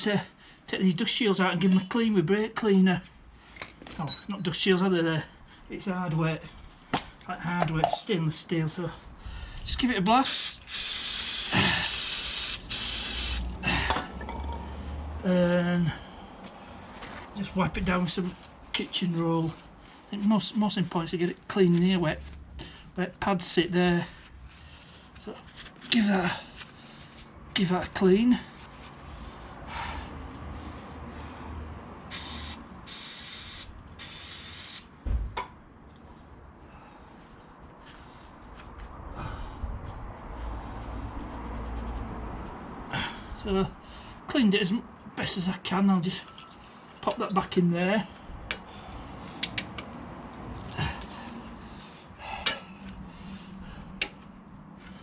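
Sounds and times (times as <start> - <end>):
aerosol can spraying: 10.3 - 13.5, 32.1 - 34.9.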